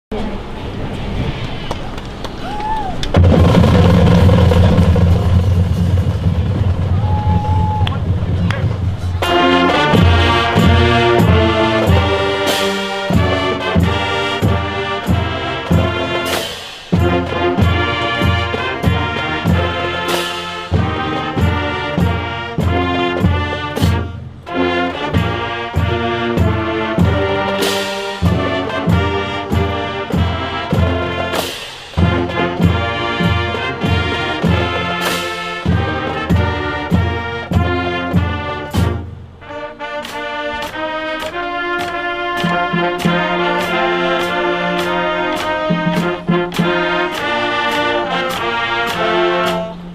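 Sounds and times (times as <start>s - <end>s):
brass ensemble playing: 3.1s - 7.1s, 8.1s - 49.9s.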